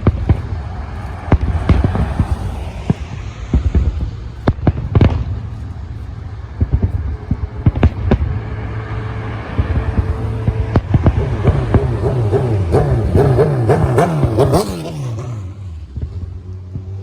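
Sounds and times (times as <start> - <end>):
fireworks bangs: 0.0 - 6.0
low rumble: 0.0 - 14.4.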